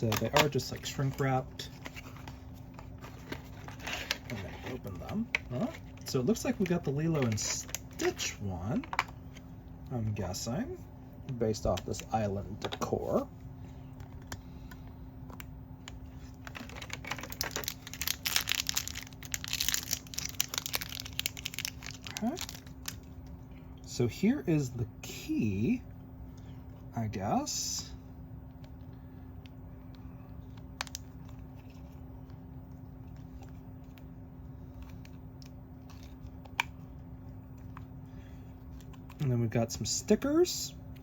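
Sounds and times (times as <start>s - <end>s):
plastic packaging crinkling: 0.0s - 9.1s, 16.1s - 23.2s
steady low hum: 0.0s - 41.0s.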